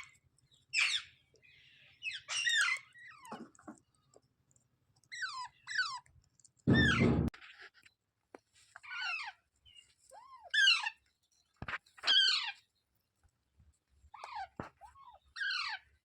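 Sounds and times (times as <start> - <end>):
parrot squawking: 6.7 - 7.2, 14.2 - 15.8.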